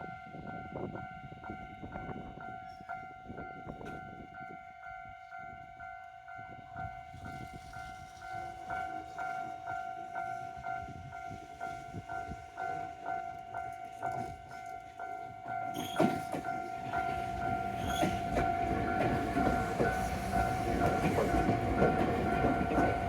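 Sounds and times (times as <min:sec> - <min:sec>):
train rumble and wheel clatter: 0:00.0 - 0:23.0
level crossing alarm clanging: 0:15.2 - 0:23.0.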